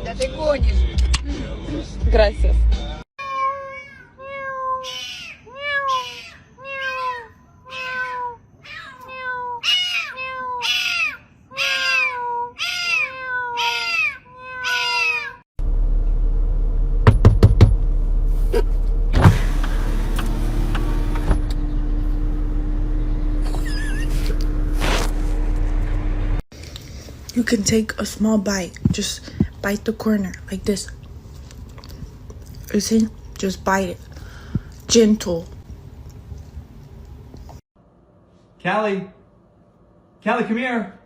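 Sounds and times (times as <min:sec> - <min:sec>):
cat meowing: 0:03.2 - 0:15.4.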